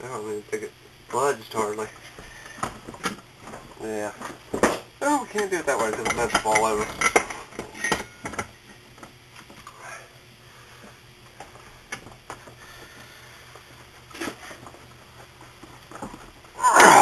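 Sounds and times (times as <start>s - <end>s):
metal tools clicking and knocking: 5.8s - 8.5s.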